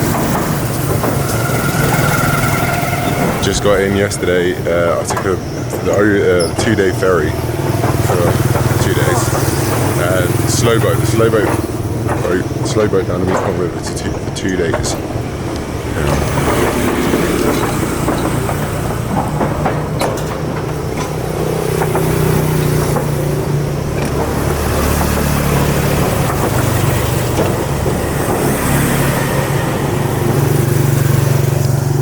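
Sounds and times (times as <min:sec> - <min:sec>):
broad rushing noise: 0:00.0 - 0:14.2
engine droning: 0:00.0 - 0:32.0.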